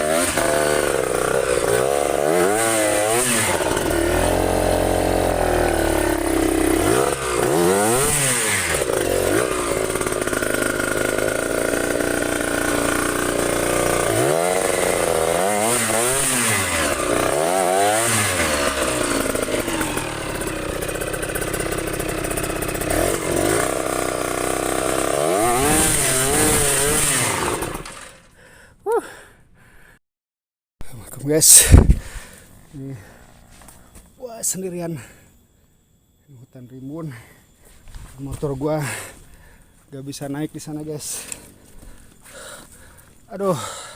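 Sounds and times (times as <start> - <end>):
motorcycle engine revving: 0.0 - 28.3.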